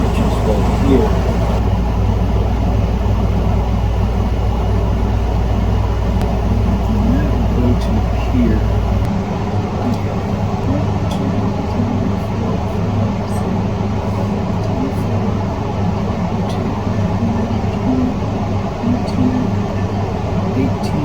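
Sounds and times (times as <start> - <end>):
machinery hum and hiss: 0.0 - 21.0.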